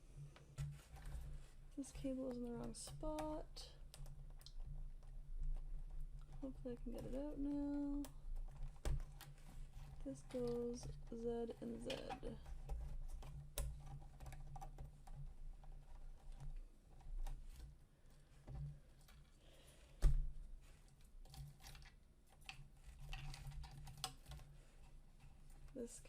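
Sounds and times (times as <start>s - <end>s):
plastic connectors clicking and rattling: 0.6s - 17.8s, 21.0s - 24.6s.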